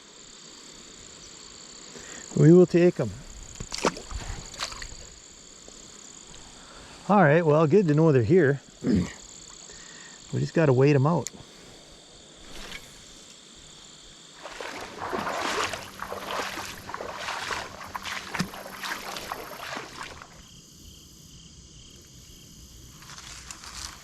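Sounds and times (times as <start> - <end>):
high insect trill: 0.0 - 24.0
water sloshing and splashing: 3.5 - 5.1, 12.4 - 13.0, 14.3 - 20.5.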